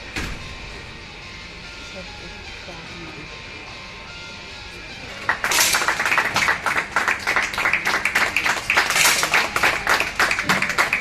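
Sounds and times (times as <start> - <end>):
spectators clapping in rhythm: 5.2 - 11.0.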